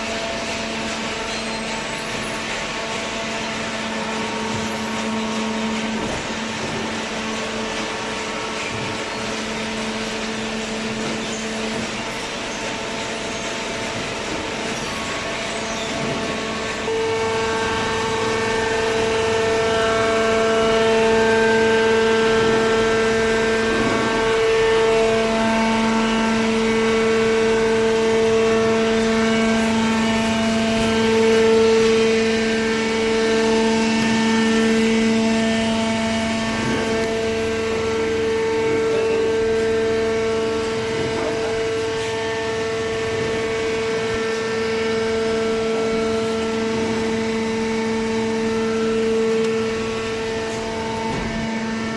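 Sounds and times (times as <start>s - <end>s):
electric motor and pump whining: 0.0s - 51.9s.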